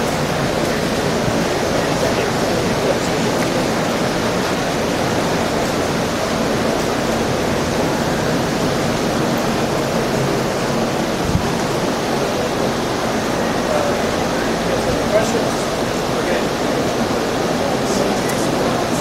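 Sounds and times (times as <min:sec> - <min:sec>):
loud rushing noise: 0:00.0 - 0:19.0.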